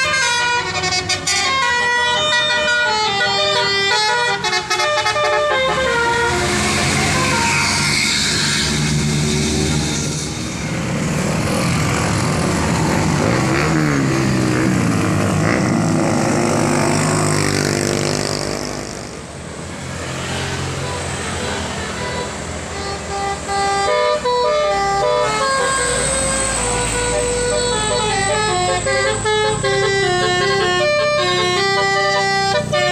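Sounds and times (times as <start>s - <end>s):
multi-tone bus horn tune: 0.0s - 9.0s, 20.7s - 32.9s.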